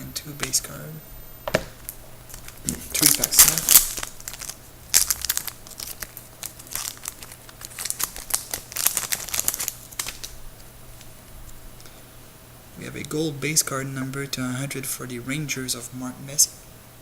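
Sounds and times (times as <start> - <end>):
wrapper tearing and crinkling: 1.8 - 11.1.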